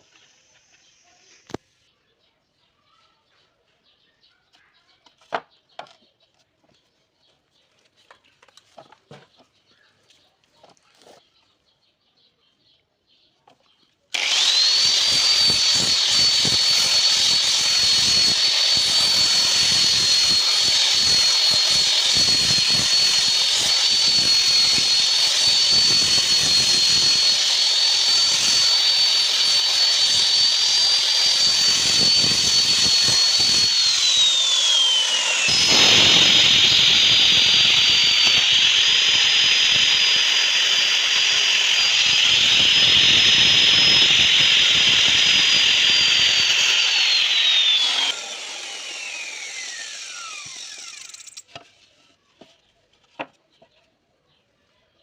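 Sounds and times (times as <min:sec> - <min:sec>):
power sander whining: 0:14.1 - 0:51.8.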